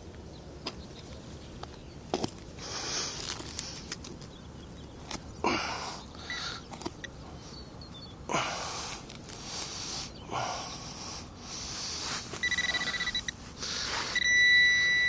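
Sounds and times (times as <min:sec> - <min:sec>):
high-pitched rapid beeping: 0:12.4 - 0:13.2
probe scuffing in soil: 0:13.3 - 0:14.2.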